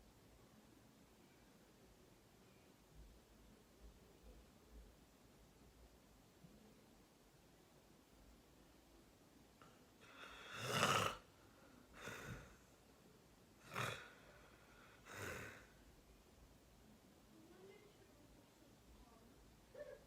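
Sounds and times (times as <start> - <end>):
person snoring: 10.0 - 11.3, 12.0 - 12.6, 13.6 - 15.7.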